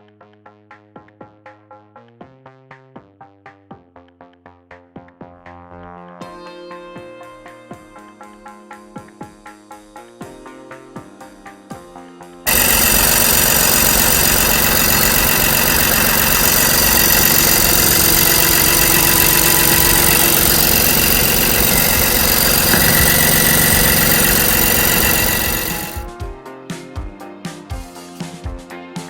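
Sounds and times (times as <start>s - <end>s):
car engine idling: 12.5s - 25.9s.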